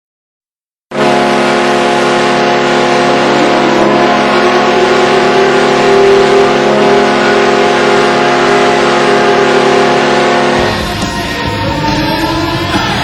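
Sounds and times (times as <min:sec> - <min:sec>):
arena goal horn blast: 0:00.9 - 0:12.6
arena goal music: 0:03.0 - 0:13.0.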